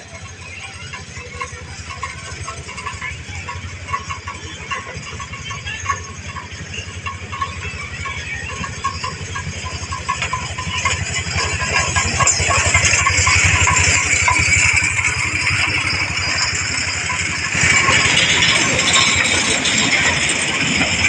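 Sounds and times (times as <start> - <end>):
toy train engine chugging: 0.0 - 21.0.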